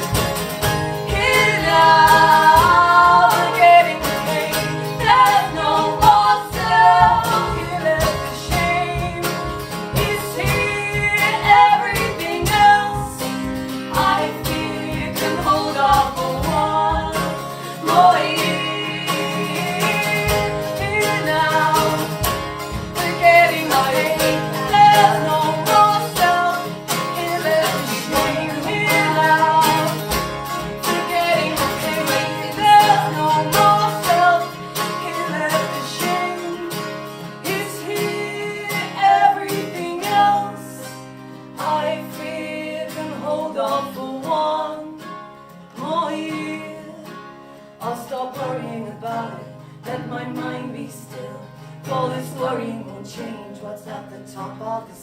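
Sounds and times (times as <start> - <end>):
live band instrumental: 0.0 - 43.2
guitars: 0.0 - 55.0.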